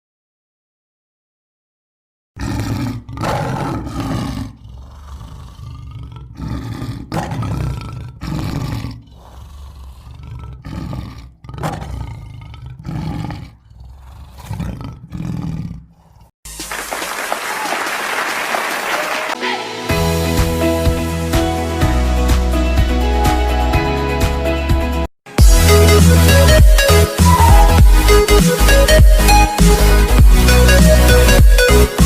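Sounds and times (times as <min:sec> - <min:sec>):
rough low growling roars: 0:02.4 - 0:16.3.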